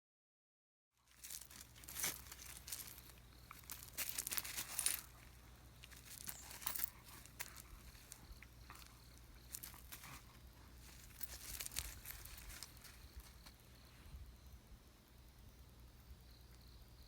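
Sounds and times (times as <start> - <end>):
faint low hum: 1.0 - 17.0
dog clothes rustling and crinkling: 1.1 - 13.6.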